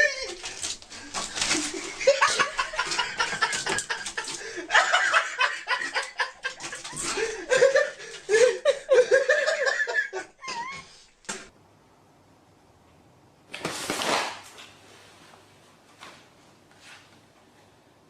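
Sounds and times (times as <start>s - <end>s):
people laughing: 1.2s - 10.8s.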